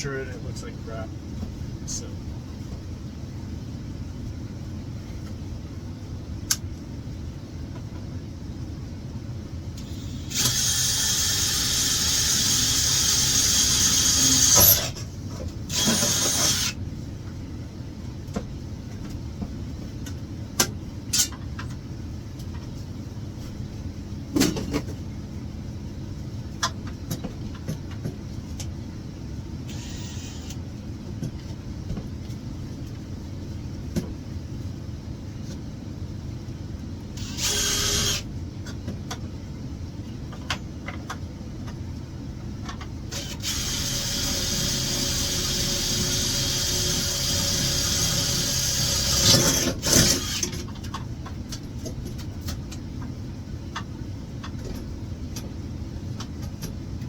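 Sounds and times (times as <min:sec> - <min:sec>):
drill cutting sheet metal: 0:09.9 - 0:15.0, 0:15.7 - 0:16.8, 0:37.2 - 0:38.2, 0:43.2 - 0:50.5.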